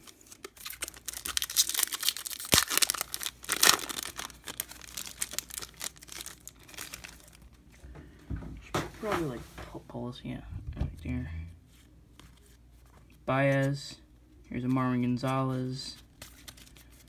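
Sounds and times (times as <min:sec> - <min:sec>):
wrapper tearing and crinkling: 0:00.0 - 0:07.5.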